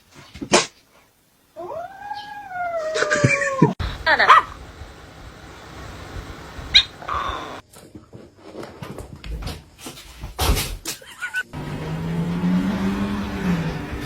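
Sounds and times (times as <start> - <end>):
steady low hum: 3.8 - 7.6.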